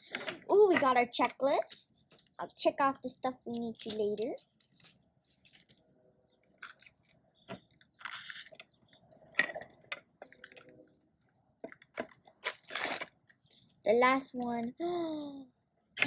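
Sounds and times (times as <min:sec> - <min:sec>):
plastic and paper packaging crinkling: 0:03.4 - 0:05.8, 0:07.8 - 0:08.6, 0:12.0 - 0:13.1.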